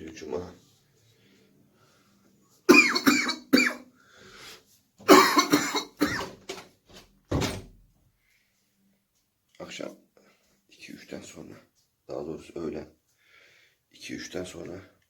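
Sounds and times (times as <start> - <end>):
man coughing: 2.7 - 3.8, 5.1 - 6.3.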